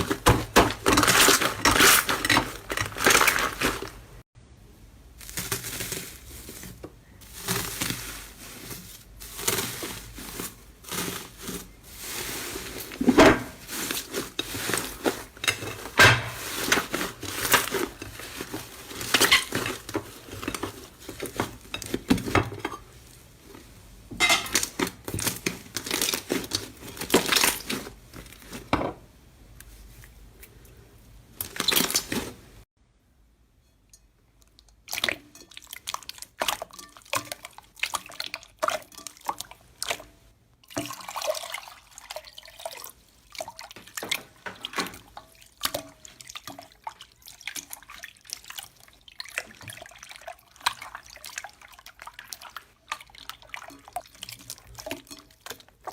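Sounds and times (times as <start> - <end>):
slime crackling and crunching: 5.1 - 22.1, 24.5 - 28.7.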